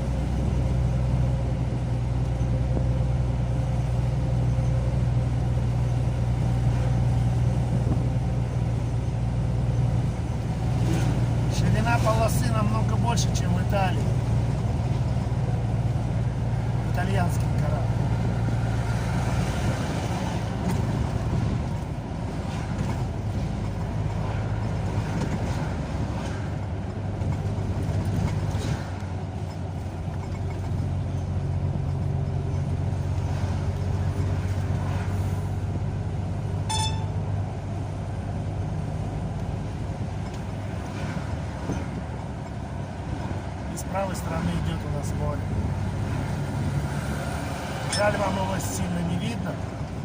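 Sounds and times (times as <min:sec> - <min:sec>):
car engine and road noise: 0:00.0 - 0:50.0
short high beep: 0:36.7 - 0:37.2.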